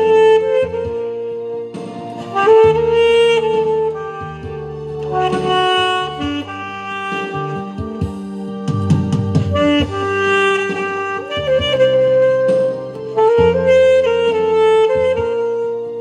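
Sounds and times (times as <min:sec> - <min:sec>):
instrumental accompaniment: 0:00.0 - 0:16.0
saxophone slow melody: 0:00.0 - 0:16.0.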